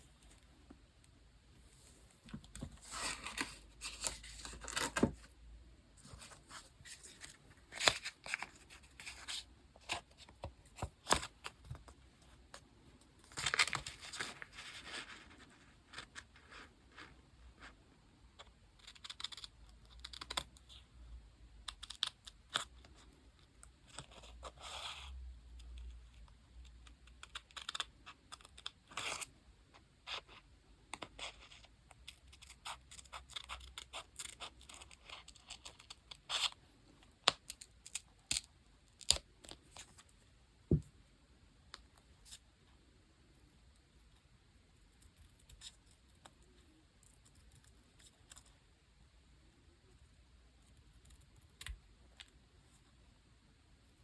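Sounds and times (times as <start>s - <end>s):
paper and stickers handled: 1.8s - 5.3s, 6.0s - 12.5s.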